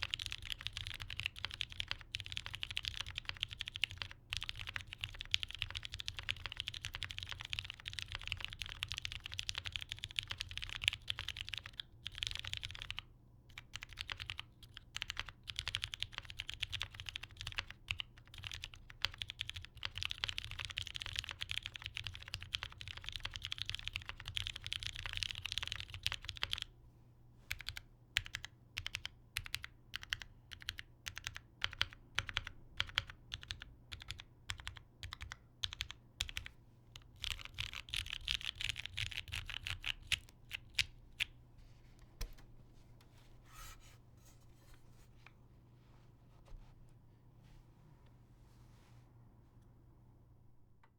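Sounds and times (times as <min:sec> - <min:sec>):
mechanical keyboard typing: 0:00.0 - 0:26.7, 0:27.5 - 0:41.3.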